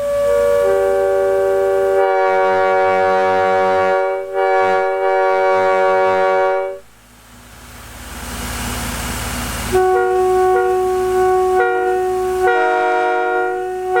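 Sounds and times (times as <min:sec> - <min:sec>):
locomotive air horn blast: 0:00.0 - 0:07.0, 0:09.5 - 0:14.0.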